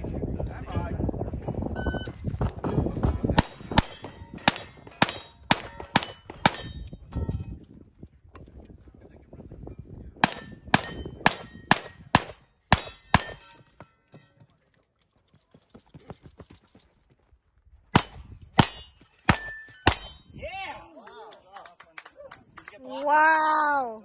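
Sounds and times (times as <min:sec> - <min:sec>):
steel target plates ringing: 0:03.4 - 0:07.4, 0:10.2 - 0:12.0, 0:12.7 - 0:14.0, 0:18.0 - 0:20.3.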